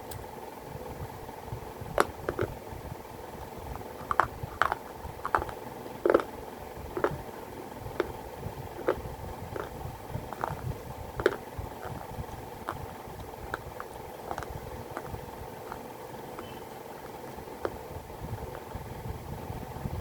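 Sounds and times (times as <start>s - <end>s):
low hum: 0.0s - 20.0s
clay pieces crunching when chewed: 3.4s - 7.3s, 7.9s - 18.8s.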